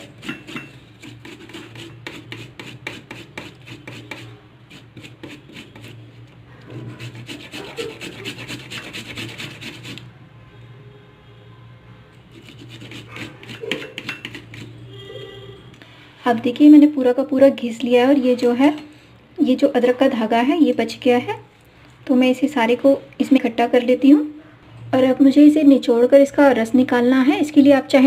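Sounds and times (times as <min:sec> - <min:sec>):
ginger rasping on a grater: 0:00.0 - 0:10.1, 0:12.3 - 0:14.8.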